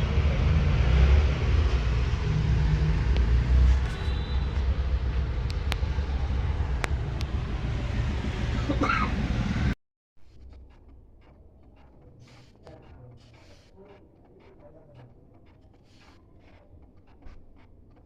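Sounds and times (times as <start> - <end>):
low rumble with hiss: 0.0 - 14.2.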